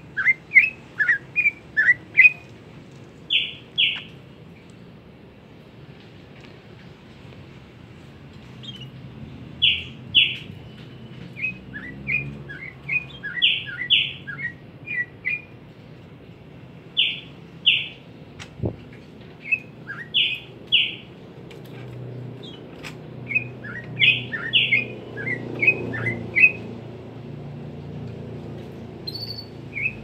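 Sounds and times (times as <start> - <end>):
songbird singing: 0.0 - 2.6, 3.2 - 4.9, 8.4 - 15.6, 16.9 - 18.2, 18.9 - 21.2, 22.2 - 26.8, 29.0 - 30.0.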